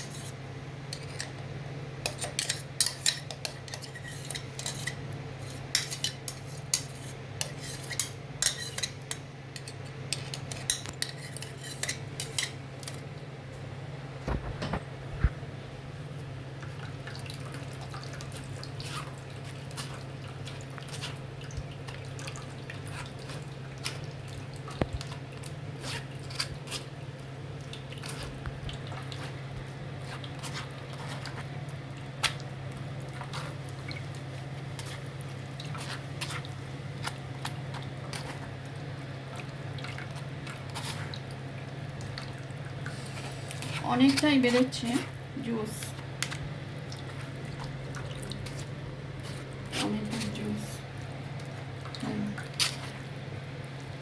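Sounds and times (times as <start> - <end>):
steady low hum: 13.0 - 17.9.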